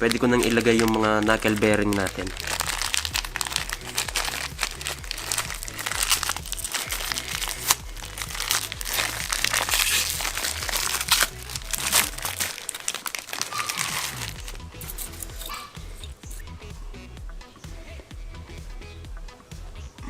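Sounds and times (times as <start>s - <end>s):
packaging clicking and crinkling: 0.0s - 15.6s
background music with bass line: 0.0s - 20.0s.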